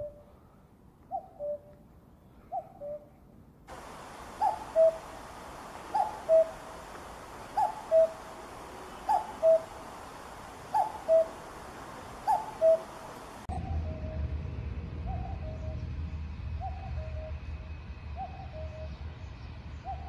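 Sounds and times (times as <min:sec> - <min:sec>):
steady hiss: 0:03.7 - 0:13.5
cuckoo calling: 0:03.7 - 0:14.0
low rumble: 0:13.4 - 0:18.2.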